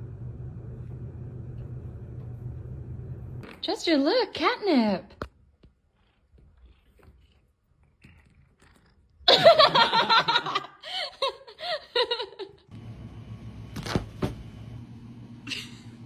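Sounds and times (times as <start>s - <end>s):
low steady hum: 0.0s - 3.6s
person laughing loudly: 9.3s - 12.6s.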